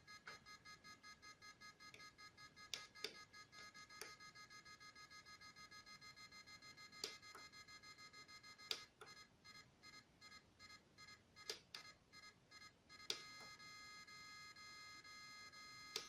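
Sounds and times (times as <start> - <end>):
electronic horn beeping tone: 0.0 - 16.0
sharp clicks: 2.7 - 3.2, 7.0 - 7.5, 8.6 - 9.2.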